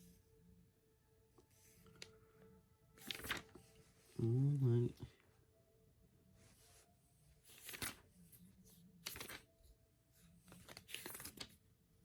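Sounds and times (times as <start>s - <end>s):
paper pages rustling: 3.0s - 4.2s, 7.4s - 9.5s, 10.2s - 11.6s.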